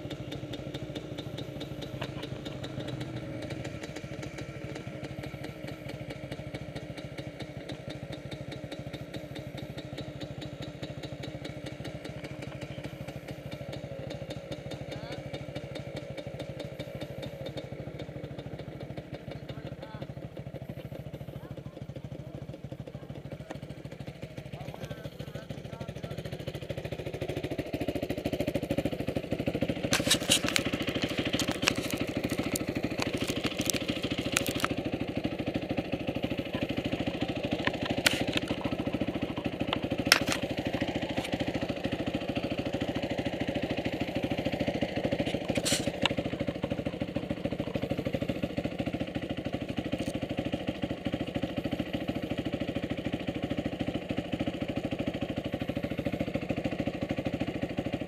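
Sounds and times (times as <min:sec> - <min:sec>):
motorcycle engine running: 0:00.0 - 0:58.0.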